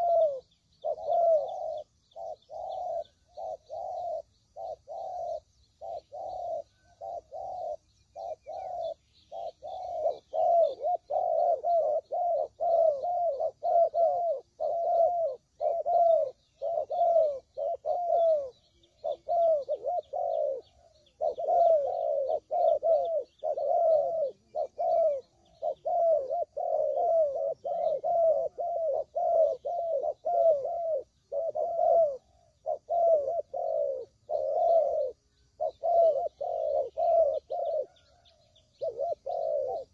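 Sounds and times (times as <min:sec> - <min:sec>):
doves cooing: 0:00.0 - 0:39.9
small birds chirping: 0:00.0 - 0:39.9.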